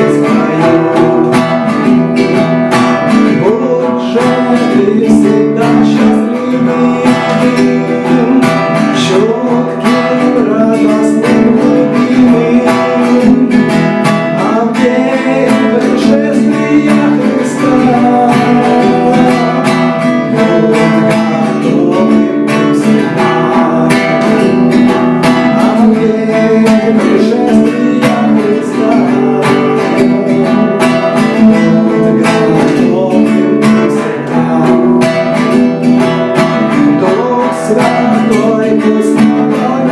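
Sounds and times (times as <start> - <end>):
acoustic guitar strumming: 0.0 - 39.9
person singing: 0.0 - 39.9.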